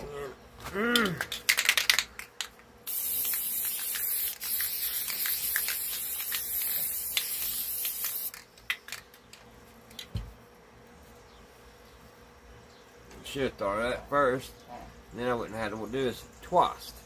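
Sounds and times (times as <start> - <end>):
aerosol spray can hissing: 2.9 - 8.4.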